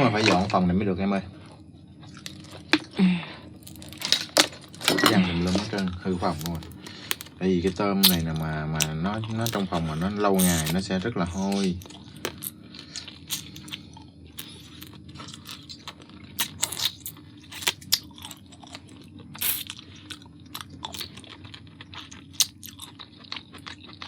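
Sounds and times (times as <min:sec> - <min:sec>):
chewing: 0:01.4 - 0:24.0
lobster shell cracking: 0:03.6 - 0:07.4, 0:08.0 - 0:10.8.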